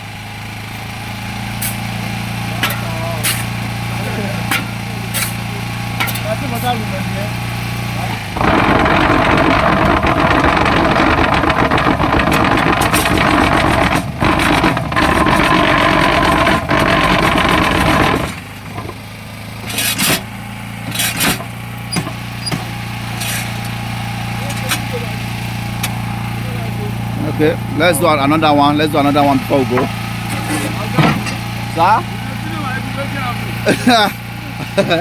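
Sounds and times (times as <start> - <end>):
engine running: 0.0 - 35.0
block machine rattling: 8.2 - 26.0.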